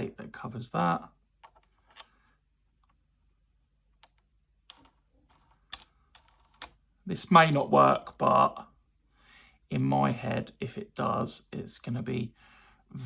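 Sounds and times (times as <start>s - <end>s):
soft plastic clicks: 3.9s - 6.8s.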